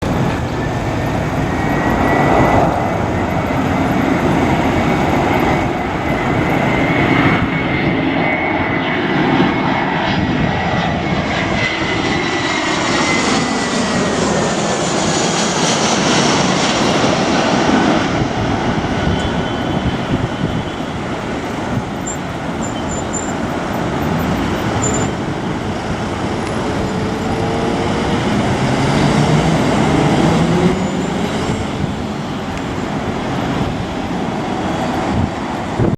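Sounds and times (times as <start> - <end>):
jet airliner engines droning: 0.0 - 35.9.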